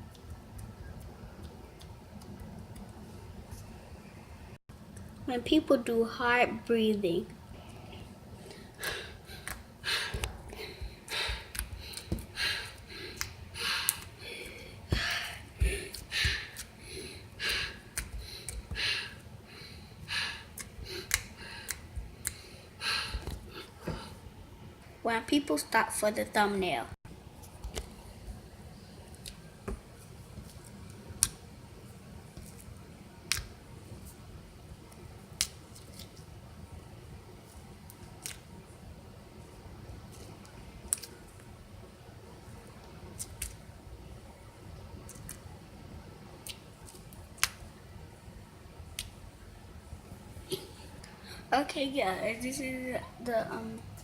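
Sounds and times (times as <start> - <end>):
faint room hiss: 0.0 - 54.0
person breathing hard: 7.7 - 24.2.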